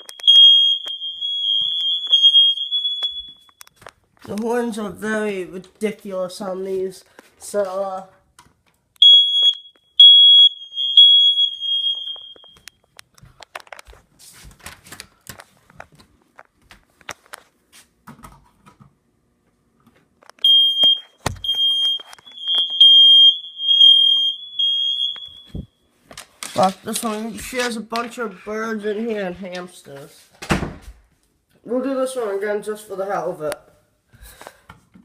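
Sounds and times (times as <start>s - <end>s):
smoke detector alarm: 0.0s - 3.8s, 9.0s - 12.9s, 20.4s - 25.9s.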